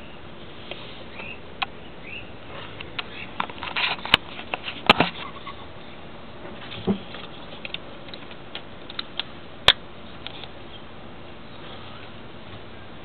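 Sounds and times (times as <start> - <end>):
sharp clicks and light knocks: 6.5 - 10.6.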